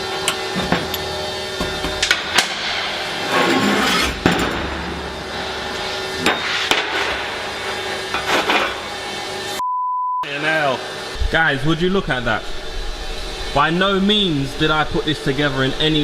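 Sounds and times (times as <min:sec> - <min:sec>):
hammer striking metal: 0:00.0 - 0:03.1
metal parts scraping and clinking: 0:00.1 - 0:02.5.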